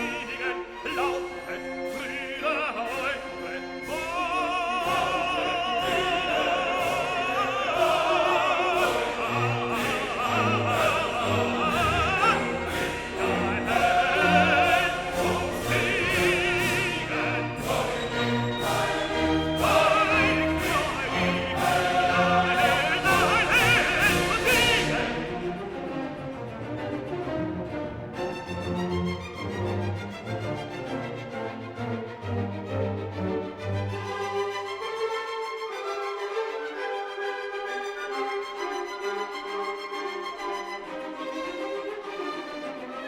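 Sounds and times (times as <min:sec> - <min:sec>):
operatic singing: 0:00.0 - 0:43.0
orchestral accompaniment: 0:00.0 - 0:43.0.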